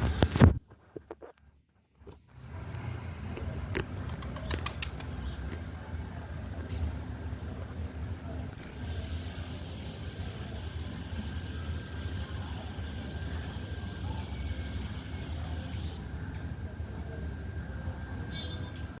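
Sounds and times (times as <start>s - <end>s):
insect chirping: 2.3s - 19.0s
hiss: 8.8s - 16.0s.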